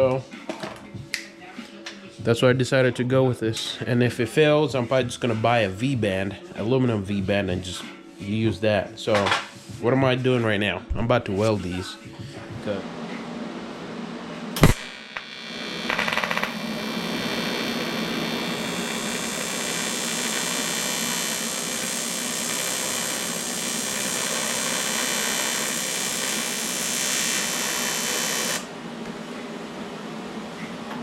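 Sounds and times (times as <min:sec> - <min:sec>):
sharp click: 0:14.6 - 0:14.9
welding arc buzzing: 0:14.6 - 0:29.1.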